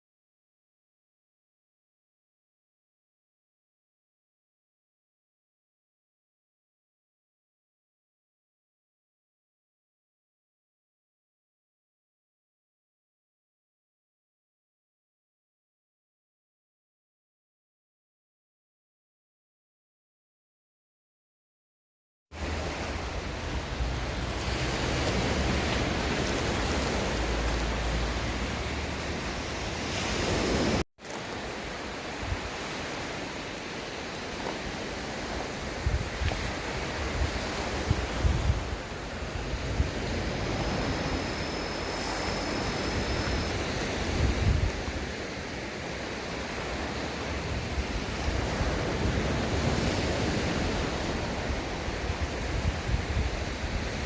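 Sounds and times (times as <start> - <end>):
wind buffeting microphone: 22.4 - 30.8, 34.4 - 45.4, 46.4 - 54.0
sea waves breaking on beach: 22.4 - 54.0.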